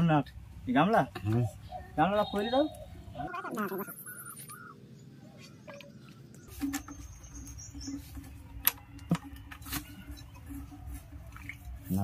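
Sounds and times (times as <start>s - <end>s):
birds chirping: 0.7s - 9.4s.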